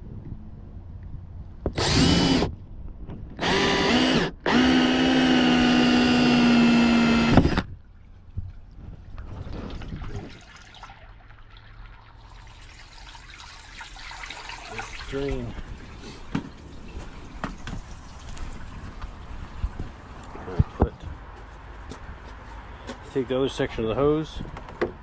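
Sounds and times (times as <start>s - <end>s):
cordless drill motor whine: 1.8s - 2.5s, 3.4s - 7.7s.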